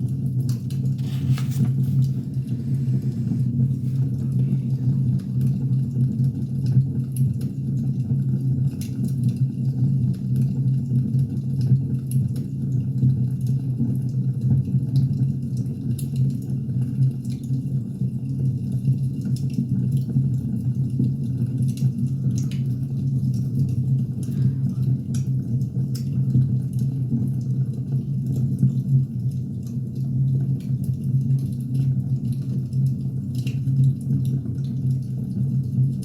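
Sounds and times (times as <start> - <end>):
low rumble of fire: 0.0 - 36.0
firewood crackling and popping: 0.1 - 8.0, 25.1 - 36.0.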